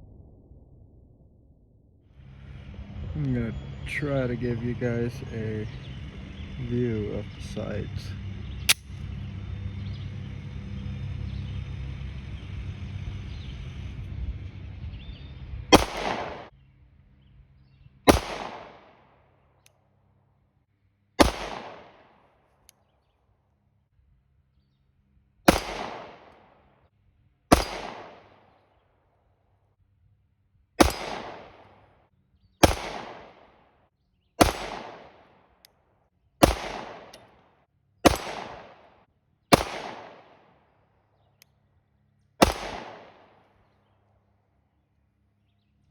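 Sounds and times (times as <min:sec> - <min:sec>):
pistol shots: 0:15.7 - 0:16.5, 0:18.1 - 0:19.1, 0:21.2 - 0:22.2, 0:25.5 - 0:26.6, 0:27.5 - 0:28.6, 0:30.8 - 0:31.9, 0:32.6 - 0:33.7, 0:34.4 - 0:35.5, 0:36.4 - 0:40.6, 0:42.4 - 0:43.6.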